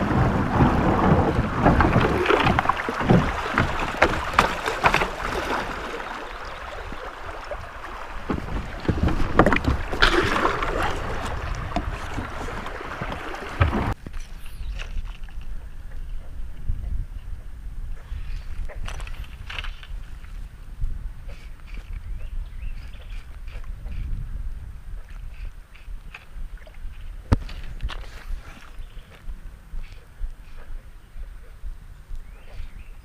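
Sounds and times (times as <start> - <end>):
knocks and clunks: 0.0 - 6.1, 7.5 - 14.2
water sloshing around kayak hull: 0.0 - 14.1.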